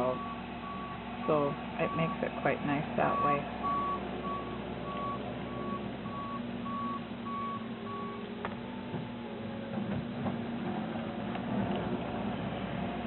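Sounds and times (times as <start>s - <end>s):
backup alarm beeping: 0.0s - 2.3s, 3.0s - 8.3s
diesel engine running: 0.0s - 13.0s.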